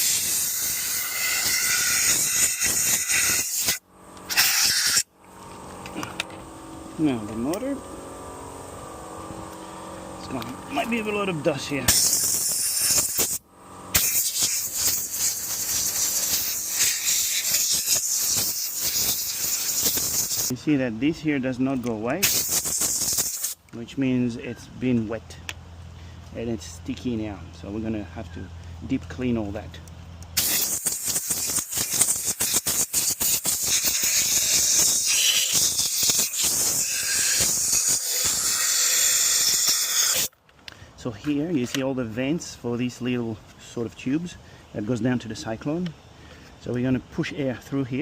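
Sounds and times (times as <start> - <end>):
compressed air blow gun hissing: 0.0 - 5.1, 11.8 - 20.5, 22.2 - 23.6, 30.4 - 40.3.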